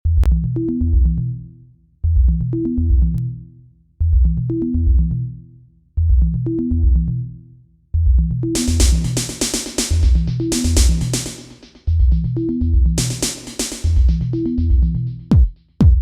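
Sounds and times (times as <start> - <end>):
hi-hat hits: 8.6 - 11.9, 13.0 - 14.4
bass and synth phrase: 9.9 - 11.2.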